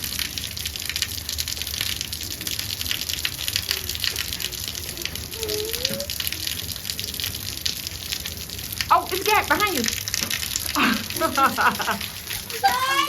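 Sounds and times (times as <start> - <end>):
heavy rain splashing: 0.0 - 13.0
faint child's voice: 4.8 - 6.3, 12.5 - 13.0.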